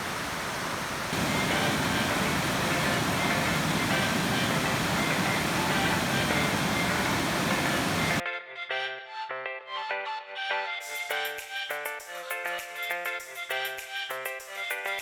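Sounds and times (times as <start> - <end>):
waterfall rushing: 0.0 - 8.2.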